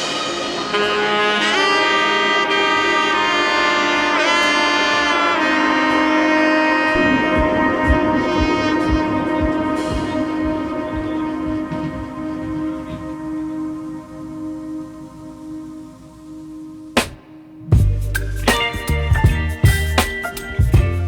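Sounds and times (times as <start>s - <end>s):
wind instrument melody: 0.0s - 21.0s
light drum beat: 7.2s - 13.2s, 17.0s - 21.0s.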